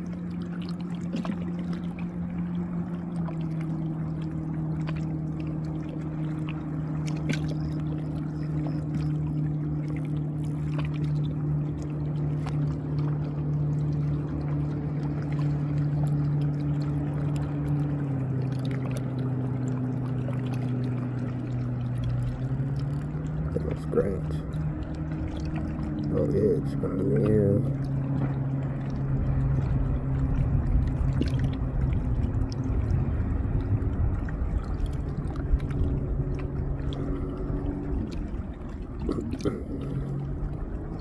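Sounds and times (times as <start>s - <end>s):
boat motor running: 0.0s - 41.0s
wash of water: 0.0s - 41.0s.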